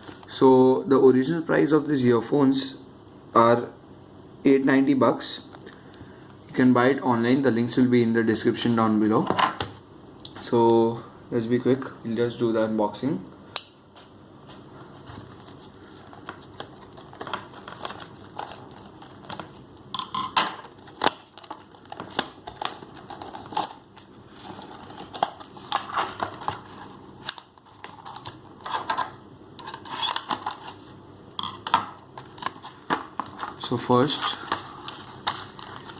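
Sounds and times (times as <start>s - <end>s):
cardboard and plastic crinkling: 15.0s - 19.6s, 20.6s - 29.0s, 32.1s - 35.9s.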